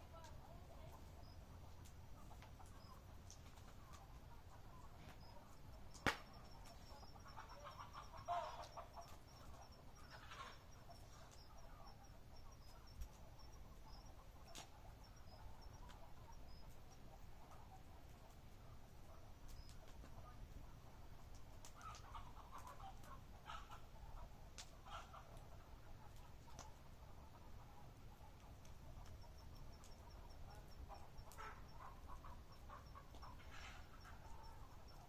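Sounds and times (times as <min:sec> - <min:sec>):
insects ticking: 0:00.2 - 0:18.6, 0:27.9 - 0:35.0
campfire pops: 0:05.8 - 0:07.0.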